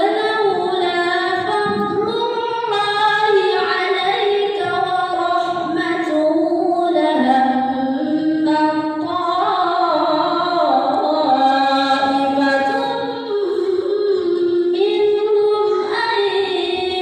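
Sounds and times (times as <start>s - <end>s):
woman reciting melodically: 0.0s - 17.0s.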